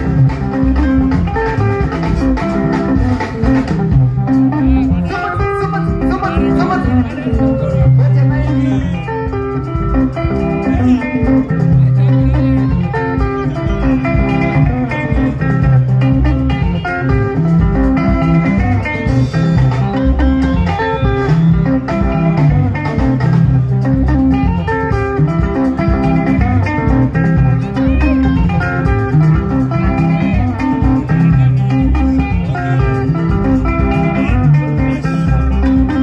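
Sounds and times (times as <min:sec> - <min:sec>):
plucked guitar lines: 0:00.0 - 0:36.0
steady bass line: 0:00.0 - 0:36.0.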